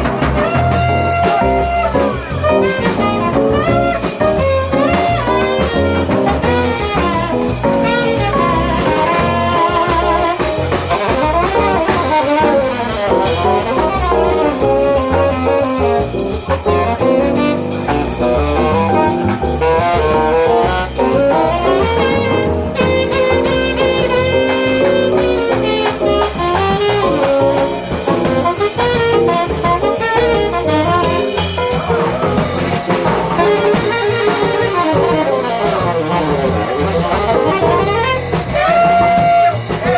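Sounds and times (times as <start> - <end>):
jazz melody: 0.0 - 39.9
steady drums: 0.0 - 39.9.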